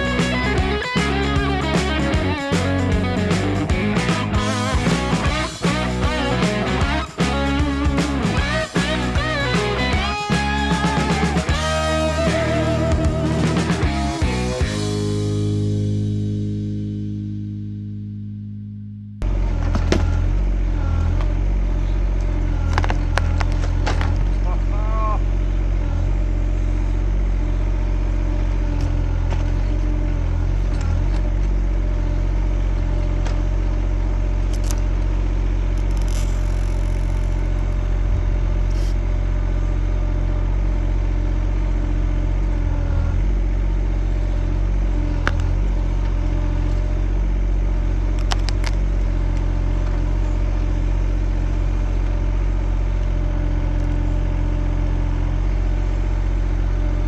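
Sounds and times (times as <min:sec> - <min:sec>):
excavator engine running: 0:00.0 - 0:16.9, 0:19.2 - 0:57.0.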